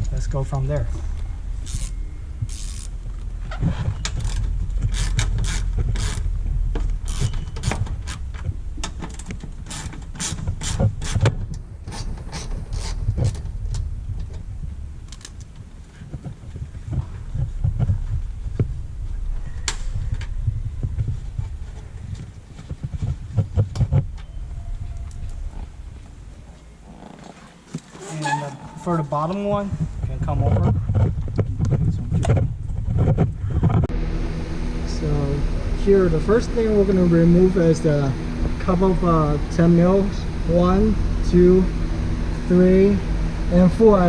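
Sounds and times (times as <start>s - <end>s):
low rumble: 0.0s - 27.2s, 28.8s - 44.0s
hand ratchet clicking: 1.6s - 3.0s, 4.0s - 6.3s, 7.0s - 8.2s, 9.0s - 11.3s, 11.9s - 13.4s.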